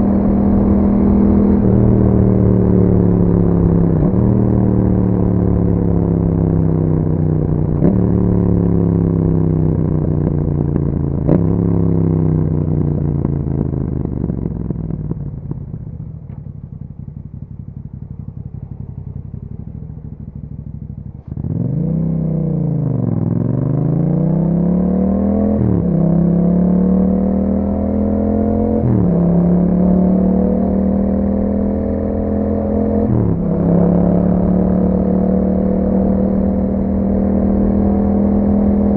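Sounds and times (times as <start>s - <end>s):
motorcycle engine changing gears: 15.7s - 38.9s.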